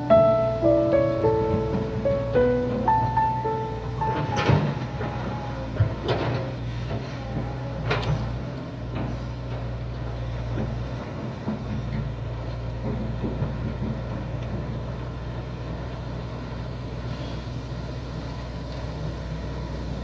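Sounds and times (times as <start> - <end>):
diesel engine under load: 0.0 - 20.0.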